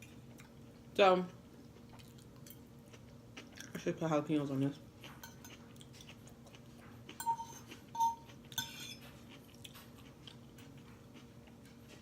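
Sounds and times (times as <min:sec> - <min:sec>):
ringing clinks of tableware: 0:07.2 - 0:09.0
tableware clicks and knocks: 0:07.2 - 0:09.1.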